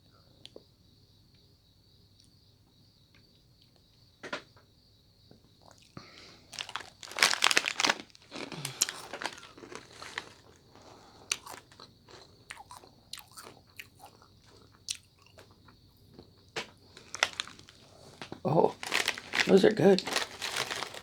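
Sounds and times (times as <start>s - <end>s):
crunching candy-coated peanuts: 5.6s - 21.0s.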